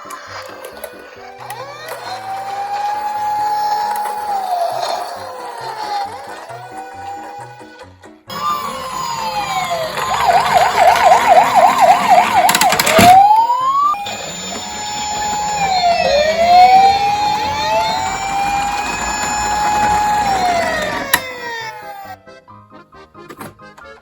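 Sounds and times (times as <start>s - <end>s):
police siren wails: 0.4s - 22.2s
police siren yelp: 1.4s - 7.7s, 8.3s - 22.2s
steady siren tone: 8.3s - 21.8s.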